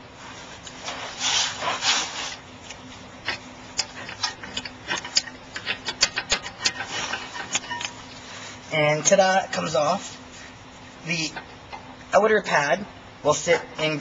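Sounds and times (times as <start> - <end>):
metal scraping: 3.3 - 8.6.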